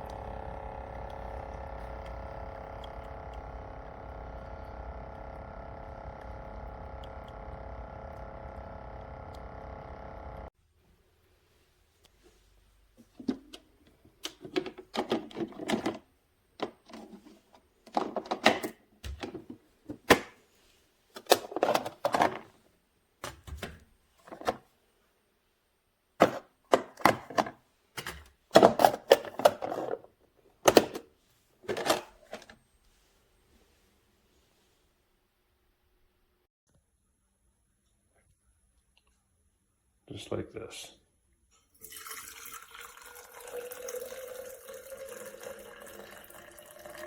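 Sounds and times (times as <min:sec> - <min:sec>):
plastic parts clicking and clattering: 0:14.2 - 0:20.4, 0:21.1 - 0:22.6, 0:23.2 - 0:24.7, 0:26.2 - 0:32.6.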